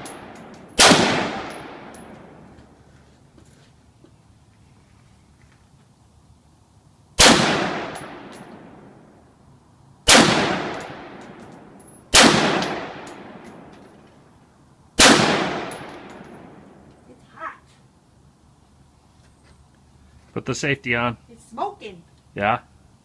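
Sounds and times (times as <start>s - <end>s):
rifle shots cracking and echoing: 0.0s - 2.5s, 7.2s - 8.8s, 10.1s - 11.5s, 12.1s - 13.7s, 15.0s - 16.8s.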